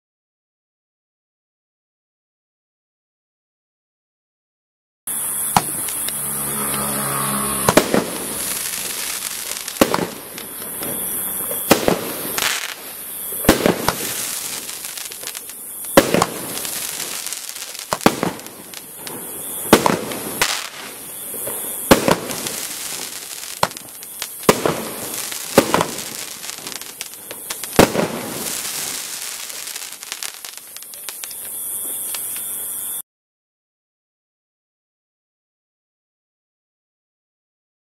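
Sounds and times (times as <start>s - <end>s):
firework hiss and crackle: 5.1s - 33.0s
firework cake bangs: 7.6s - 31.5s.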